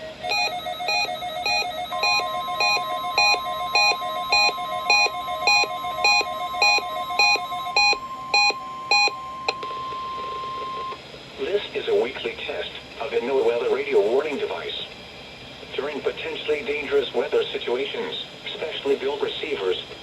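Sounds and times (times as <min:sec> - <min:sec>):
steady high tone: 0:00.0 - 0:11.0
weather radio alert beeping: 0:00.3 - 0:10.9.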